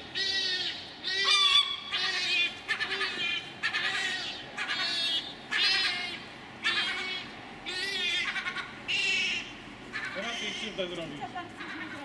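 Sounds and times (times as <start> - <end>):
seagulls calling: 0.0 - 12.0.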